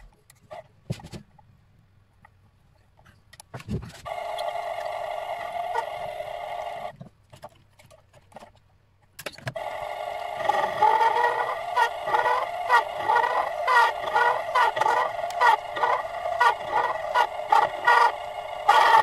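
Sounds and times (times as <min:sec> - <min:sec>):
lathe motor whining: 0:04.1 - 0:06.9, 0:09.6 - 0:19.0.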